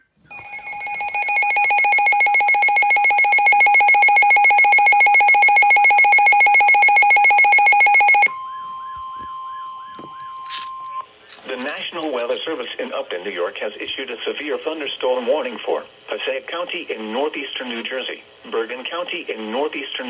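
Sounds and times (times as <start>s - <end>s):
steady warning tone: 0.1s - 13.0s
rapidly pulsing alarm tone: 0.3s - 11.4s.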